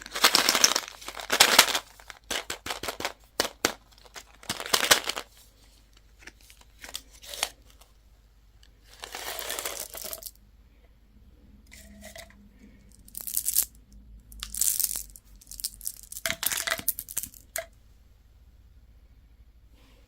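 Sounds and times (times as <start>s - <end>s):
candy wrapper crinkling: 0.0s - 5.4s, 8.9s - 10.4s, 13.0s - 13.7s, 14.4s - 17.7s.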